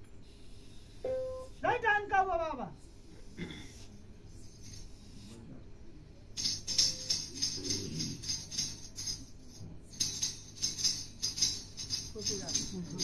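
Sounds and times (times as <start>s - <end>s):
jingling hand percussion: 6.4s - 13.0s.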